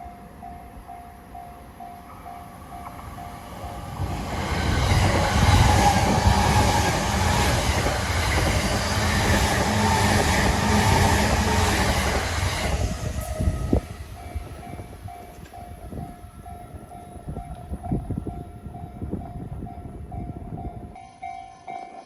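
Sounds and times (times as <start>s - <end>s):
train wheels rumbling on rails: 0.0s - 21.0s
level crossing warning bell: 0.0s - 22.0s.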